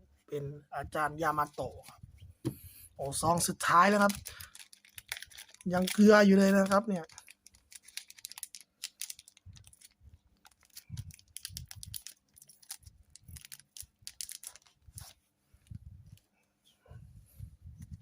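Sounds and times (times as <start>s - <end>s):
foil pack crinkling: 3.6s - 15.2s.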